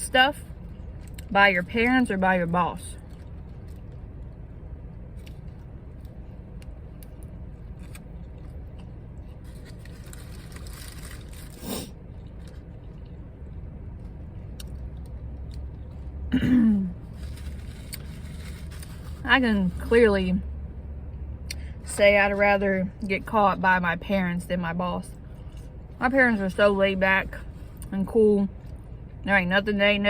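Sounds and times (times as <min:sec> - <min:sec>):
steady low hum: 0:00.0 - 0:30.0
food packaging rustling: 0:09.4 - 0:11.7, 0:17.0 - 0:19.9.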